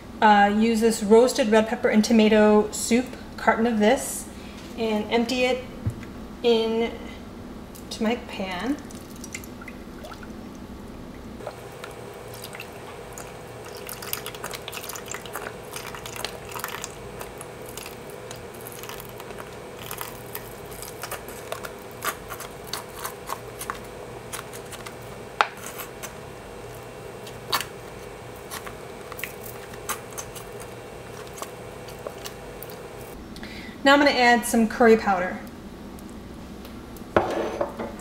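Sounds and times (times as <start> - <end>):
steady low hum: 0.0 - 38.0
thick soup pouring into a pan: 11.4 - 20.2.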